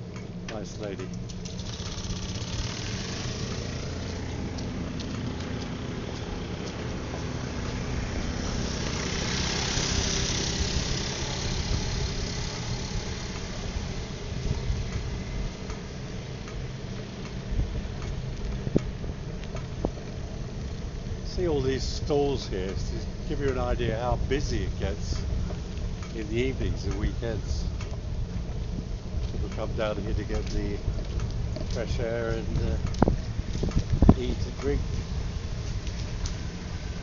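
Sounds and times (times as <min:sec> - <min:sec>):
rush of noise: 0:00.0 - 0:37.0
vehicle engine running: 0:00.0 - 0:37.0.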